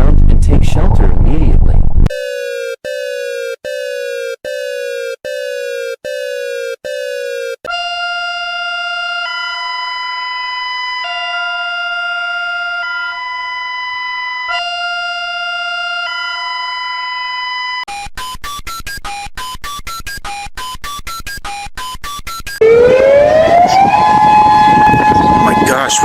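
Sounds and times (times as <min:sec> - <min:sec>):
rapid electronic beeping: 0:02.1 - 0:07.8, 0:17.9 - 0:22.6.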